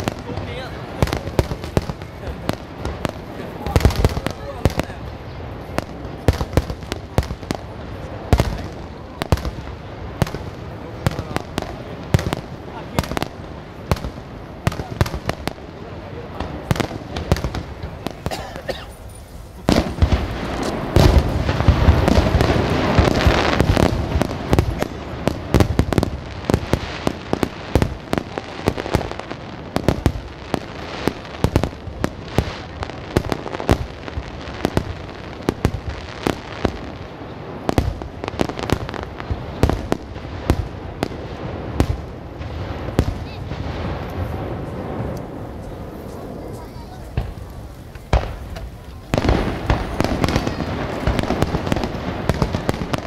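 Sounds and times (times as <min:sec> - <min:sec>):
firework shells bursting: 0:16.5 - 0:29.2.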